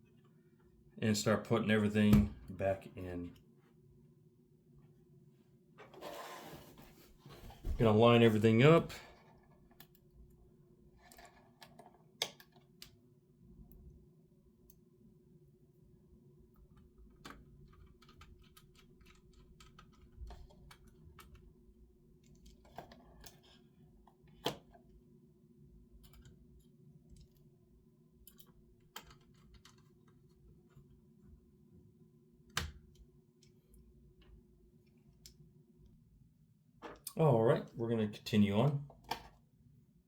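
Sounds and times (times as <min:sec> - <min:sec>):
small parts clicking and tapping: 0:16.7 - 0:21.4, 0:28.2 - 0:30.8.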